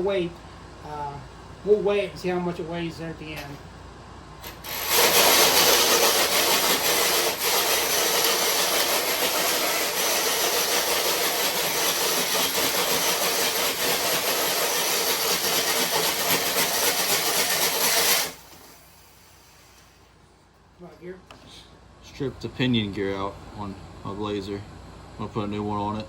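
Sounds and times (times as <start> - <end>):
electric motor and gears grinding: 4.4 - 19.9.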